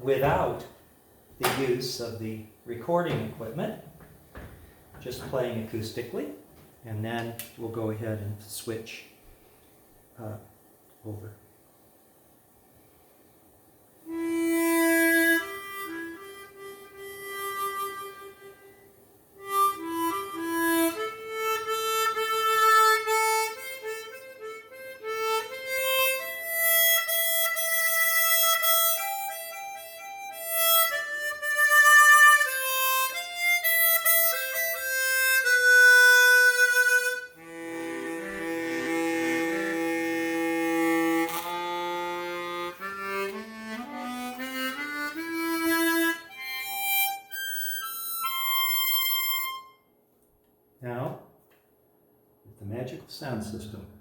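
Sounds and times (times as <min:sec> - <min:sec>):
chromatic harmonica playing: 0:14.0 - 0:50.0.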